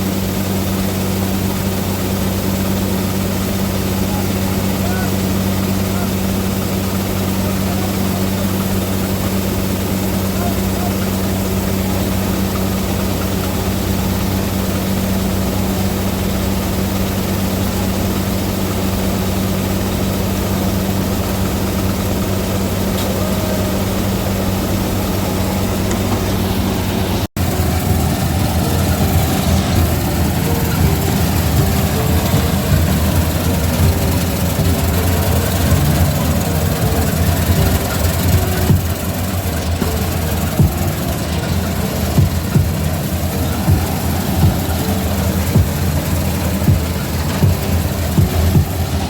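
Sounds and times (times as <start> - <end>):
rough machine noise: 0.0 - 49.0
tractor diesel engine running: 0.0 - 49.0
faint repeating ticking: 27.4 - 49.0.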